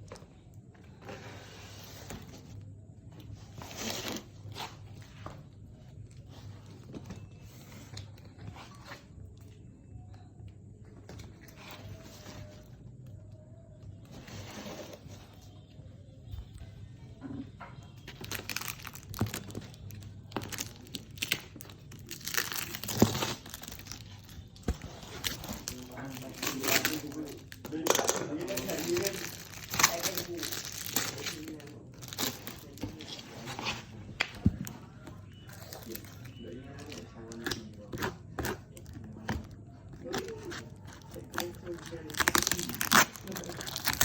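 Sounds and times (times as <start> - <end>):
packaging tearing and rustling: 18.1 - 33.9, 40.0 - 44.0.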